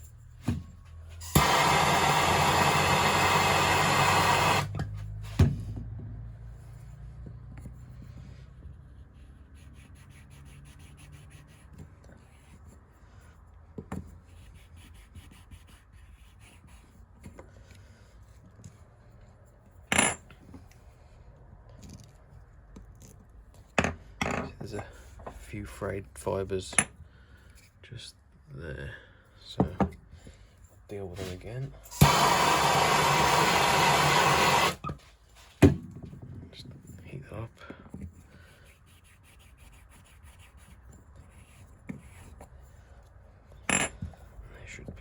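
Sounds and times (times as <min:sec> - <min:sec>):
blowtorch hissing: 0:31.9 - 0:34.8
short sharp burst: 0:31.9 - 0:34.8.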